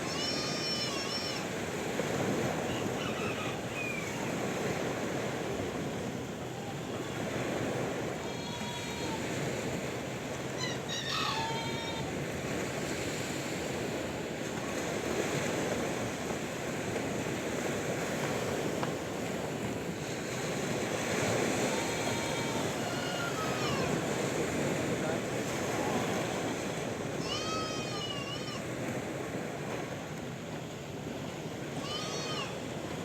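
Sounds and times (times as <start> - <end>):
sea waves washing: 0.0 - 33.0
short pitched animal calls: 10.6 - 12.1.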